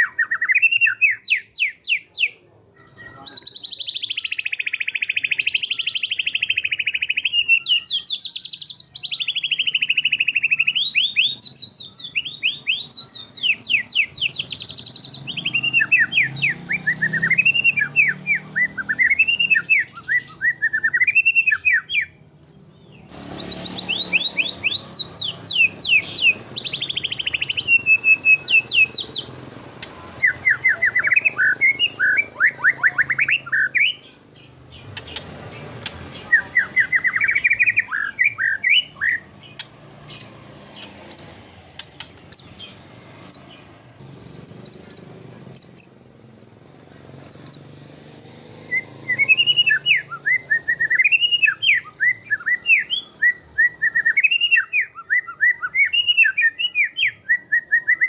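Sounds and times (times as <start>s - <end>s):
bird singing whistled notes and trills: 0.0s - 46.6s, 47.2s - 58.0s
bird chips: 23.0s - 43.8s.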